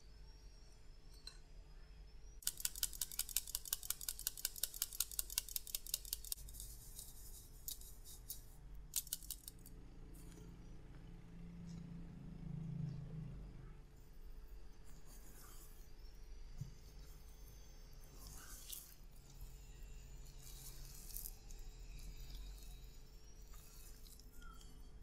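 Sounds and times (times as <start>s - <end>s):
utensil beating in a mixing bowl: 2.4s - 9.6s.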